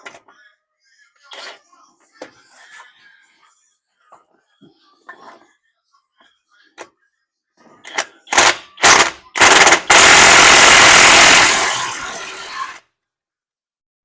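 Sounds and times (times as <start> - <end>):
impact wrench hammering: 8.3 - 12.8.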